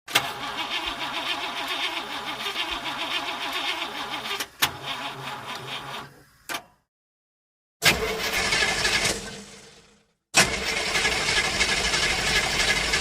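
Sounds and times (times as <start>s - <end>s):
car engine running: 8.0s - 13.0s.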